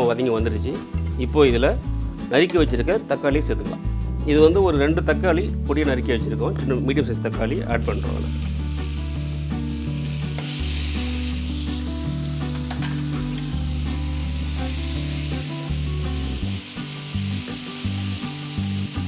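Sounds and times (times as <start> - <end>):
vegetables sizzling in a pan: 0.0 - 3.6, 7.8 - 19.0
background music: 0.0 - 19.0.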